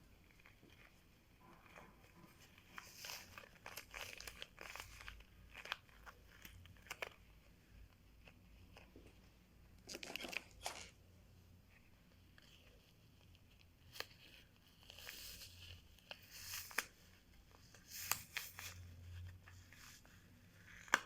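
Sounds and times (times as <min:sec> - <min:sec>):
rubber balloon rustling and crinkling: 0:00.0 - 0:11.1.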